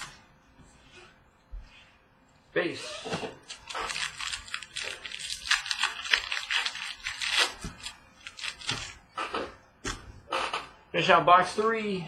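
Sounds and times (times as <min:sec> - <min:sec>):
packaging crinkling and tearing: 0:03.4 - 0:09.0.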